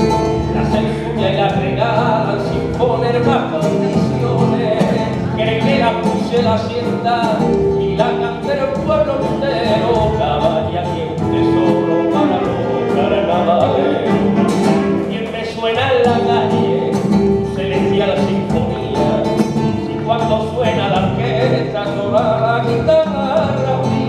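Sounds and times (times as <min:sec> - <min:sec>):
live rumba band music: 0:00.0 - 0:24.0
percussion beat: 0:00.0 - 0:24.0
wavering melody line: 0:11.3 - 0:15.1.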